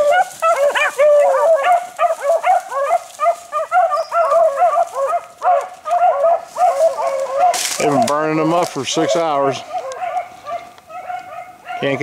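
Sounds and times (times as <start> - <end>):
beagles baying: 0.0 - 12.0.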